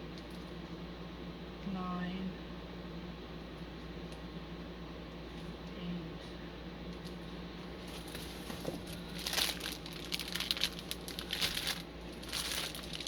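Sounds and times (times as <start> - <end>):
plastic bags crinkling: 7.8 - 13.0.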